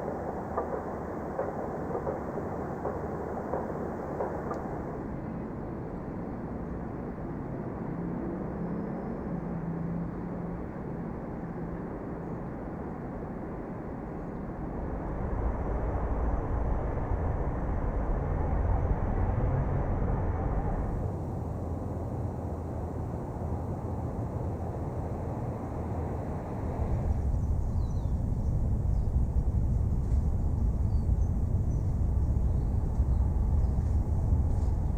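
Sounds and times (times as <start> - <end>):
deep loud rumble: 0.0 - 5.0, 15.1 - 34.9
distant city traffic rumble: 0.0 - 5.3, 10.5 - 34.9.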